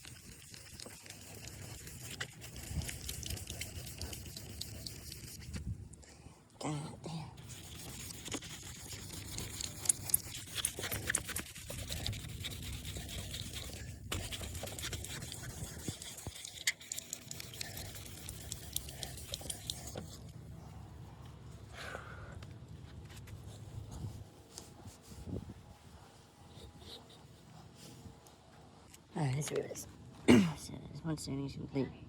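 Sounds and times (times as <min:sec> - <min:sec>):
sandpaper rubbing on plastic: 0:00.0 - 0:05.6, 0:07.4 - 0:20.3.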